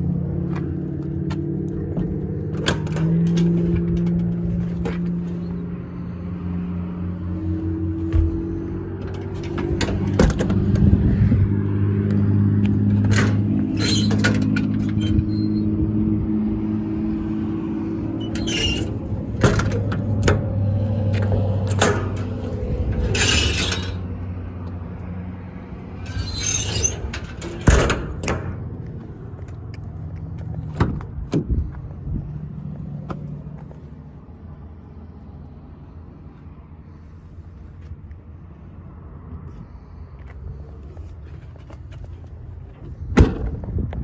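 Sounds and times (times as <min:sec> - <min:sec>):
low engine rumble: 0:00.0 - 0:44.0
metal knocks and clanks: 0:00.3 - 0:05.8, 0:07.4 - 0:15.5, 0:17.8 - 0:24.5, 0:25.8 - 0:31.5.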